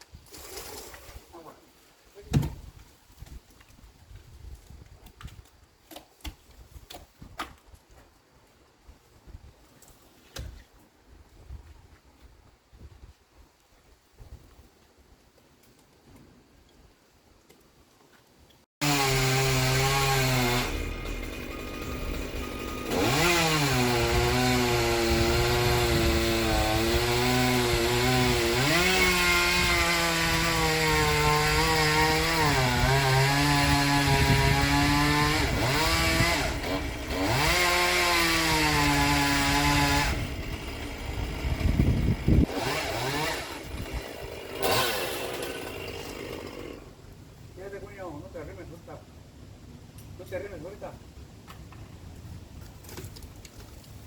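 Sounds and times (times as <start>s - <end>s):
chainsaw cutting wood: 18.8s - 47.0s.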